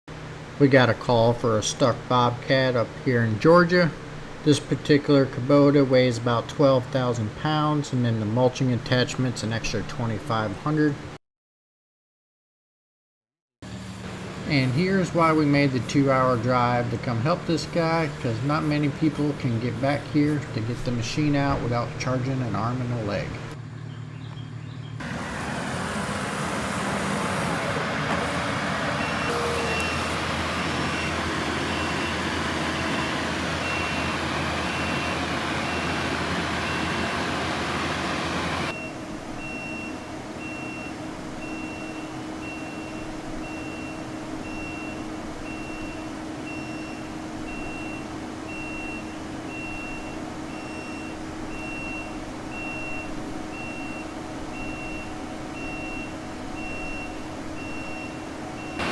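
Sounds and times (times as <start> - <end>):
diesel loader engine running: 13.6 - 40.8, 41.4 - 58.9
reversing alarm beeping: 14.5 - 20.5, 27.2 - 58.9.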